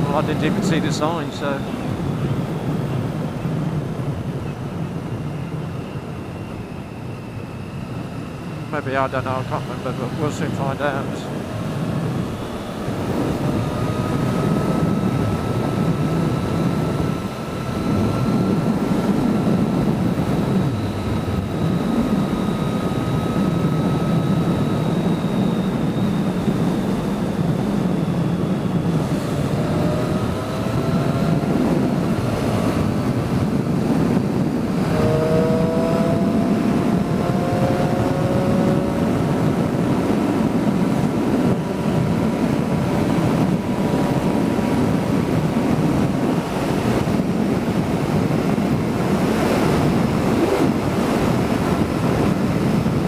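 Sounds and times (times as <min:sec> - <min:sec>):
motorcycle engine and road noise: 0:00.0 - 0:53.0
wind buffeting microphone: 0:00.0 - 0:53.0.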